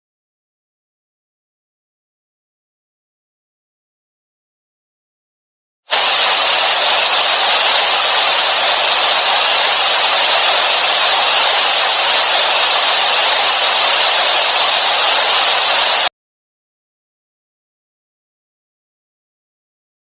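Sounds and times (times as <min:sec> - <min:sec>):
television static hiss: 0:05.9 - 0:16.1.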